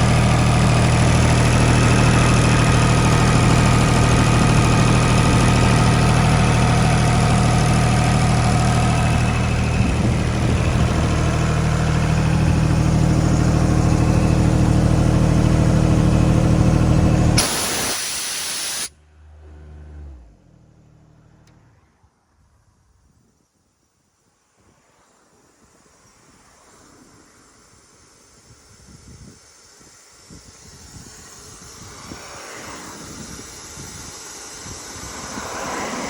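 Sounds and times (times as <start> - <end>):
diesel compressor engine running: 0.0 - 18.9, 28.4 - 36.0
falling hum of engine winding down: 0.0 - 22.3, 29.9 - 36.0
loud hiss of escaping air: 17.4 - 18.9.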